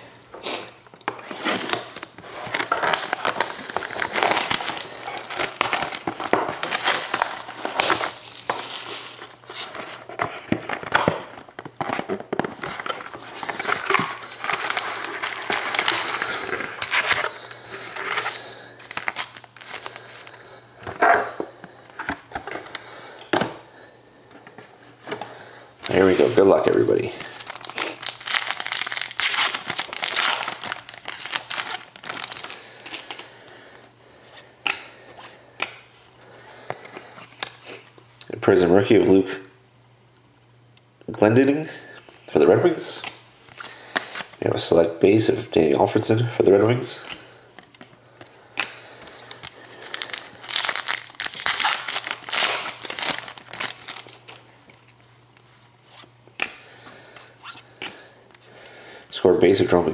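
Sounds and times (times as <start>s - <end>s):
wrapper tearing and crinkling: 1.3s - 9.7s, 12.6s - 20.1s, 27.2s - 33.3s, 49.3s - 55.0s.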